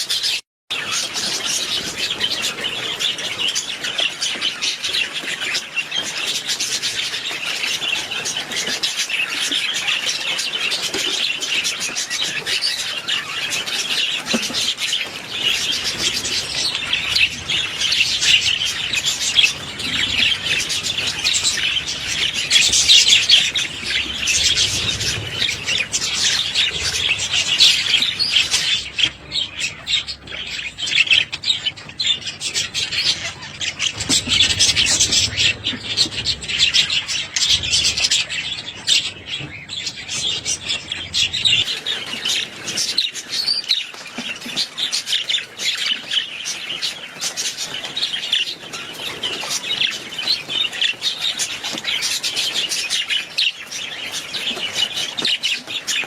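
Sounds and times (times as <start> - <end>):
budgerigars chattering and warbling: 0.1 - 43.6.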